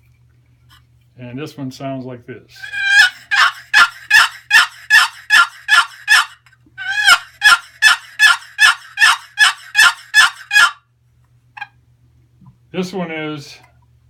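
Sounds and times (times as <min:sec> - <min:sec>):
turkey call raspy yelps: 0:02.6 - 0:10.9.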